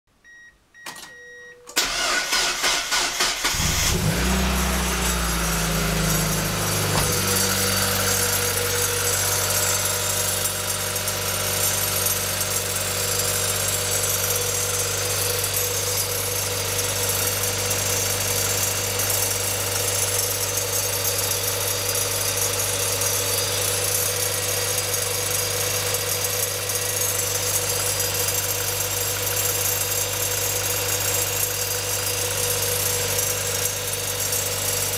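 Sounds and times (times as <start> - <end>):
car engine starting and idling: 0.8 - 34.9
steady engine whine: 3.2 - 11.6.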